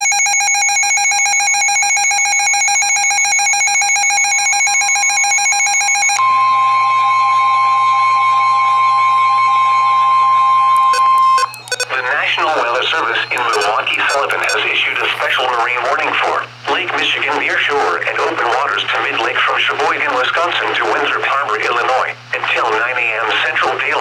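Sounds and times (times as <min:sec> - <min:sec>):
rapidly pulsing electronic alarm beeping: 0:00.0 - 0:06.2, 0:07.9 - 0:15.5
steady warning alarm tone: 0:00.0 - 0:15.5
clicks: 0:10.7 - 0:15.4.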